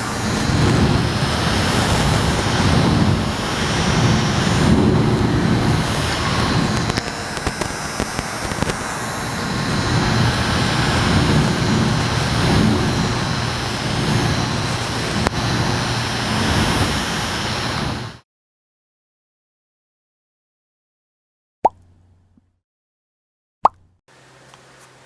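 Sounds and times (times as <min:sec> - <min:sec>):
air conditioner fan whooshing: 0:00.0 - 0:18.2.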